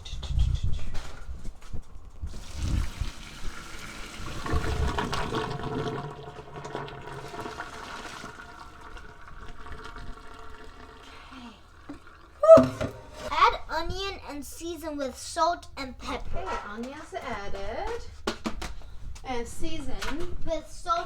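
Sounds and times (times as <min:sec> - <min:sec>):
water pouring into sink: 0:02.3 - 0:13.4
pot knocking: 0:12.4 - 0:13.3.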